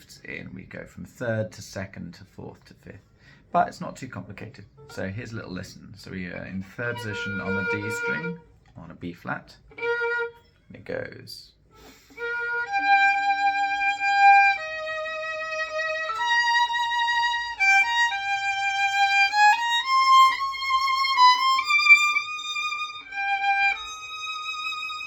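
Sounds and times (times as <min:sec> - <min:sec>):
solo violin melody: 0:06.7 - 0:08.5, 0:09.7 - 0:10.5, 0:11.8 - 0:25.0.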